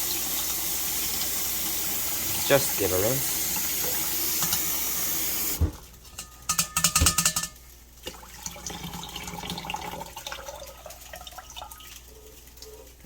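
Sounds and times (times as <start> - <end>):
tap running: 0.0 - 5.8
clinks and rattles: 6.1 - 7.6
water trickling and dripping: 8.0 - 13.0.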